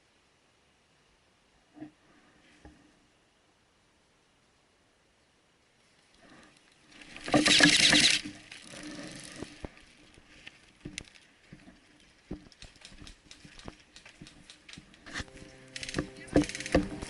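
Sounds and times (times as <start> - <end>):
rustling through brush: 5.8 - 17.0
twigs snapping: 10.1 - 17.0.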